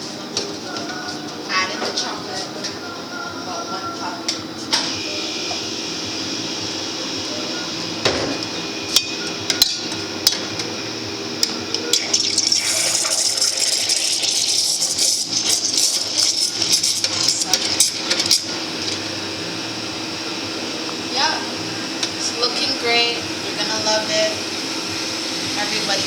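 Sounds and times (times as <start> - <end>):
machine hum: 0.0 - 26.0
metal pitcher clinking: 11.4 - 19.0
steam wand hissing in milk: 11.9 - 26.0.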